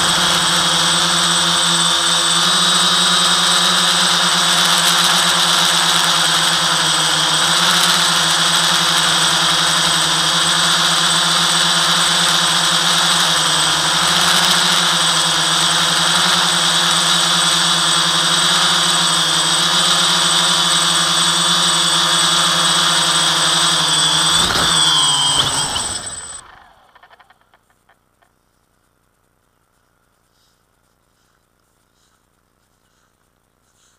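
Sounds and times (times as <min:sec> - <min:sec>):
drone motors whining: 0:00.0 - 0:27.5.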